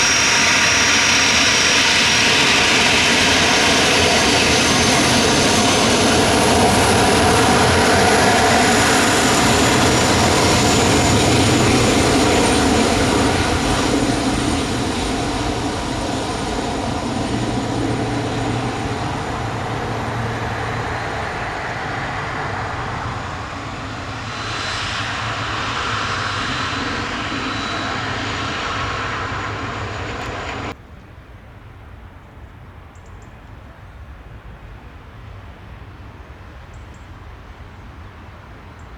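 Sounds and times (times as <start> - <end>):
jet engines running: 0.0 - 30.8.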